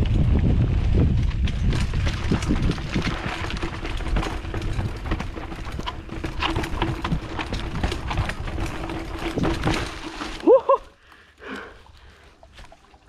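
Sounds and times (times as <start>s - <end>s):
bike rattling over bumps: 1.0s - 11.2s
tyre noise on dirt: 1.9s - 10.9s.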